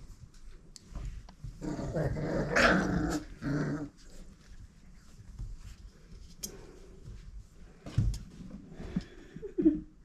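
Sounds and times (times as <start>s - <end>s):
puppy play-growling: 1.5s - 4.6s.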